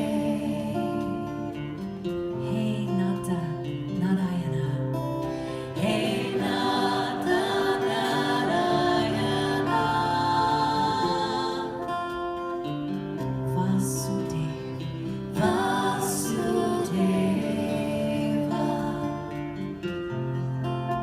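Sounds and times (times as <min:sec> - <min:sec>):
held chords: 0:00.0 - 0:21.0
person singing: 0:02.4 - 0:12.6, 0:13.3 - 0:19.8.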